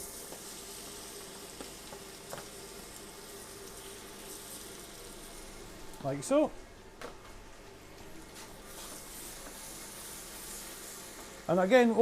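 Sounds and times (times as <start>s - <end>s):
vegetables sizzling in butter: 0.0s - 6.5s, 7.9s - 12.0s.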